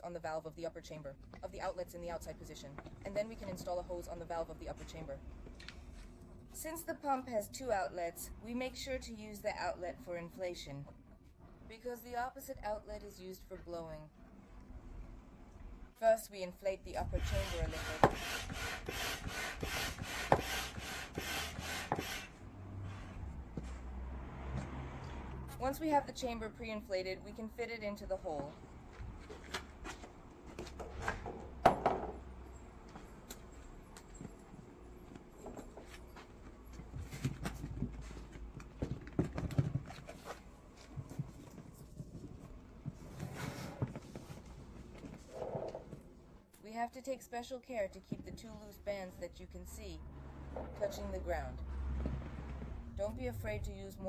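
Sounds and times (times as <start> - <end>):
hand air pump strokes: 17.1 - 22.4
knocks and thumps of handling: 29.2 - 32.3, 35.1 - 46.1.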